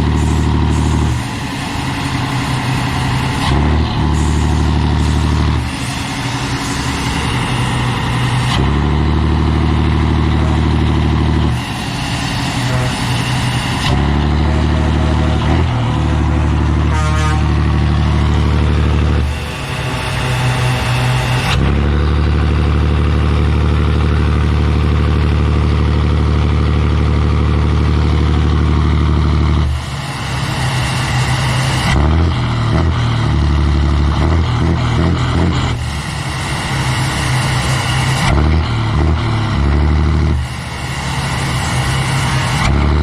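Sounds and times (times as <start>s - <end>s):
diesel truck engine revving: 0.0s - 43.0s.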